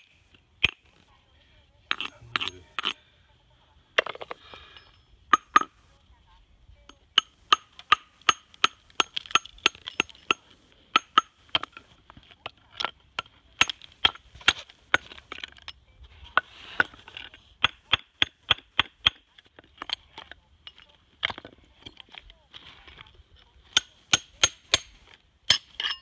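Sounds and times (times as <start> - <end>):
hammer tapping stone: 1.9 - 3.0, 4.1 - 5.8, 6.9 - 11.8, 17.6 - 21.4, 23.7 - 24.9
stone crumbling: 1.9 - 3.0.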